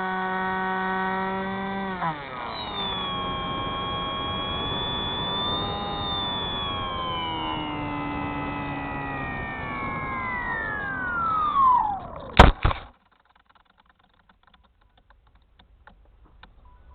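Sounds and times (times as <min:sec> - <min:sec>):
electric motor whining: 0:00.0 - 0:12.9.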